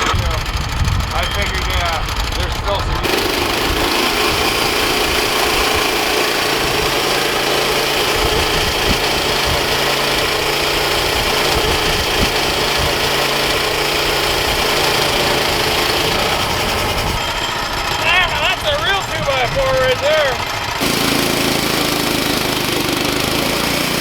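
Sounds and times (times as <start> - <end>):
bandsaw mill cutting log: 0.0 - 24.0.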